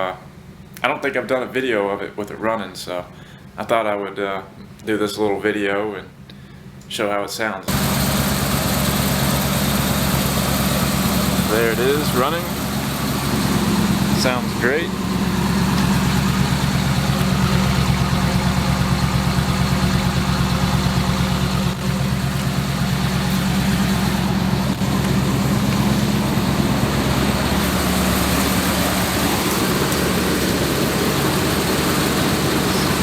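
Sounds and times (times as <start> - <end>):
van engine idling: 7.7 - 33.0.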